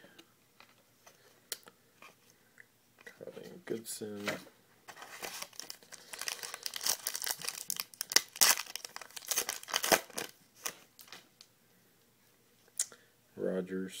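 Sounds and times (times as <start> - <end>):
wrapper tearing and crinkling: 5.0 - 11.2.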